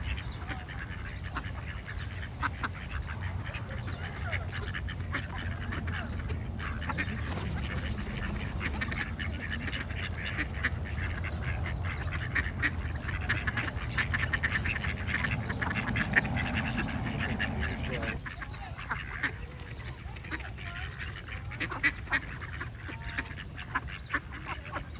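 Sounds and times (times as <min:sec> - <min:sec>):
ducks quacking: 0:00.0 - 0:24.9
steady low rumble: 0:00.3 - 0:18.4.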